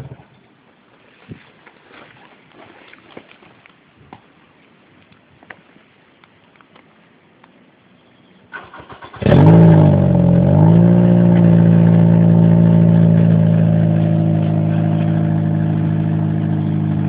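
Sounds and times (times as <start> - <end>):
car engine starting and idling: 8.5 - 17.0.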